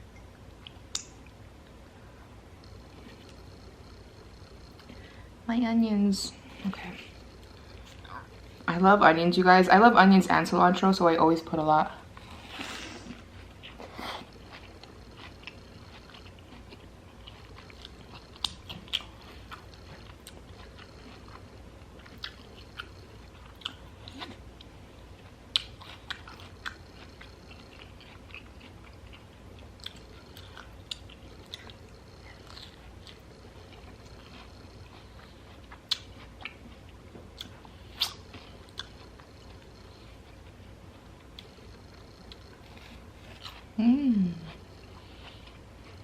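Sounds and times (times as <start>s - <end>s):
wet mouth clicks: 0.9s - 1.2s
person chewing and biting: 12.1s - 43.8s.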